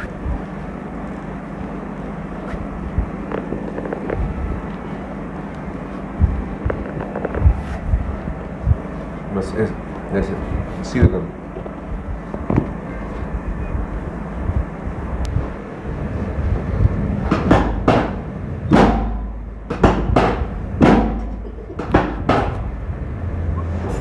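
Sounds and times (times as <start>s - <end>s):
steady low hum: 0.0s - 24.0s
sharp percussive impacts: 17.3s - 22.7s.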